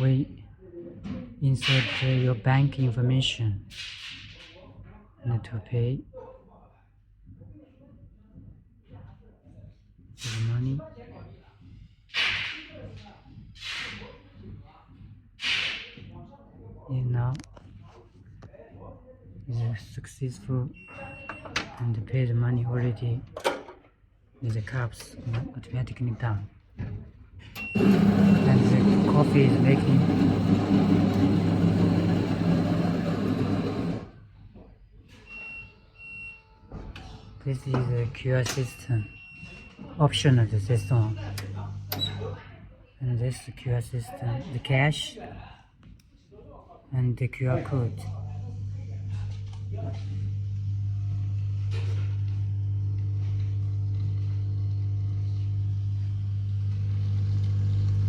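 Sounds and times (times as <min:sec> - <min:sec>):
vending machine motor and pump hum: 0:27.6 - 0:34.2, 0:40.5 - 0:42.4, 0:47.7 - 0:58.0.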